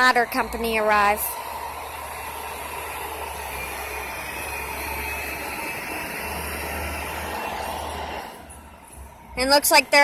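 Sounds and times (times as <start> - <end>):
fire engines idling: 0.0 - 10.0.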